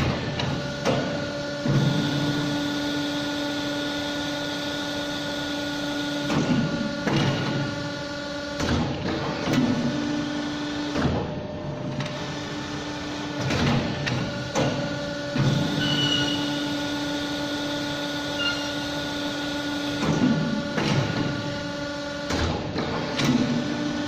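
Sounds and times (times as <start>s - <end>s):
machine motor hum: 0.0s - 24.0s
machine clicks and clunks: 6.2s - 7.7s, 8.6s - 9.9s, 10.9s - 12.4s, 13.3s - 16.3s, 19.9s - 21.5s, 22.2s - 23.6s.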